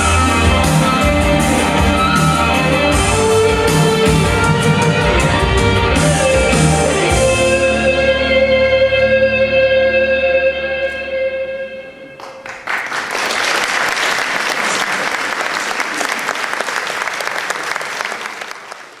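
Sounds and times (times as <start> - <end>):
audience applauding: 12.2 - 19.0.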